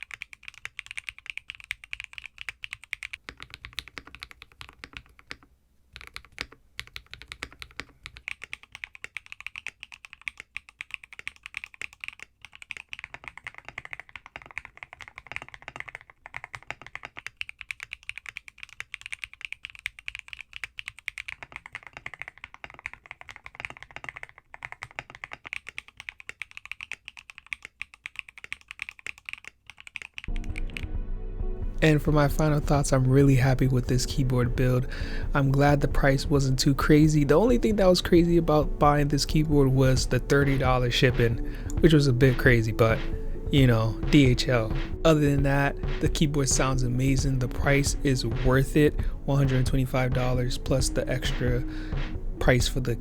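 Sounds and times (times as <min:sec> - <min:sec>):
typing on mechanical keyboard: 0:00.0 - 0:30.9.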